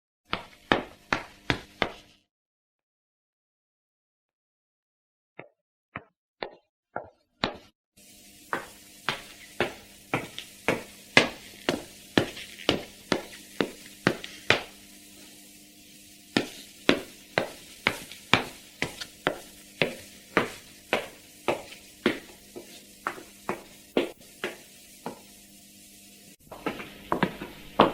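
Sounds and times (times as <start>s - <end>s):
footsteps of dress shoes clicking: 0.3s - 2.2s, 6.0s - 7.7s, 8.5s - 14.8s, 16.4s - 25.3s, 26.5s - 27.9s.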